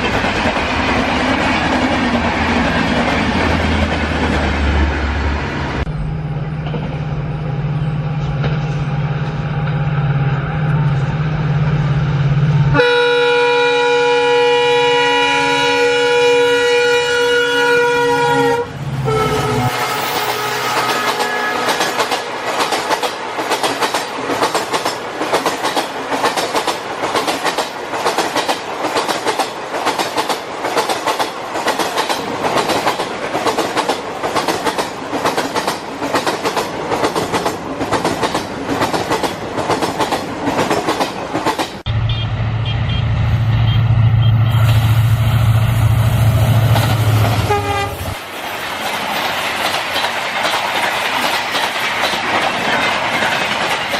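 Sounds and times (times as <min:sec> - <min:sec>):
train horn: 0:12.6 - 0:22.4, 0:41.9 - 0:44.8, 0:47.3 - 0:48.2
train wheels clacking over rail joints: 0:20.0 - 0:41.9, 0:48.2 - 0:53.9.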